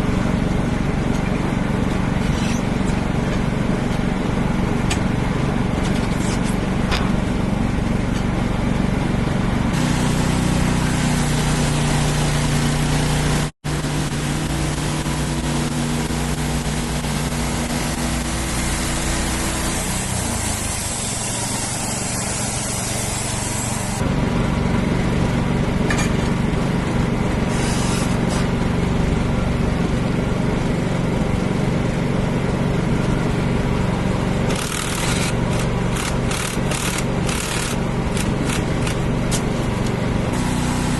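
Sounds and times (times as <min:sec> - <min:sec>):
sawmill engine droning: 0:00.0 - 0:40.9
band blade cutting log: 0:34.5 - 0:39.5.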